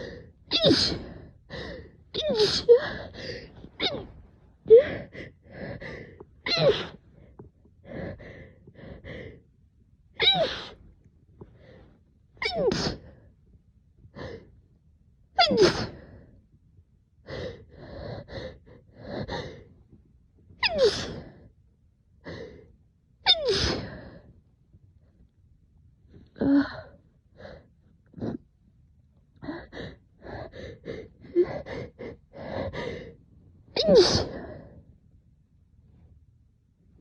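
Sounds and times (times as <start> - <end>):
soft breaths: 0.0 - 9.7, 10.4 - 12.2, 29.4 - 35.1.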